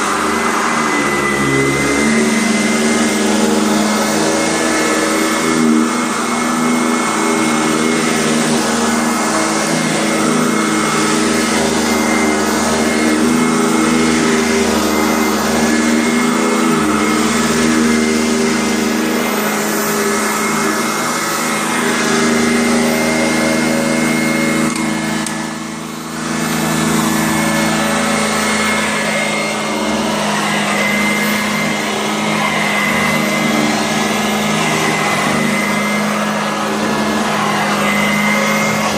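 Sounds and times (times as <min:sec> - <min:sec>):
vacuum cleaner motor whine: 0:00.0 - 0:38.9.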